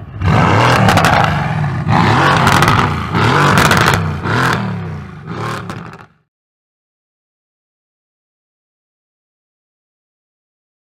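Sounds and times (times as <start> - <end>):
car engine revving: 0.0 - 6.2
exhaust crackling and popping: 0.3 - 6.1.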